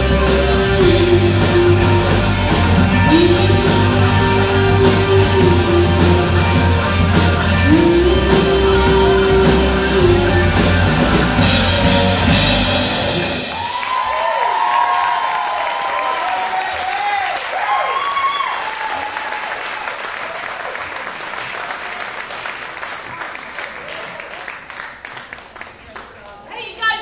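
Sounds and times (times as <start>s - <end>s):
electric guitar bent notes: 0.0s - 13.7s
bass guitar: 0.0s - 13.8s
drum kit: 0.0s - 14.3s
audience cheering: 0.0s - 25.3s.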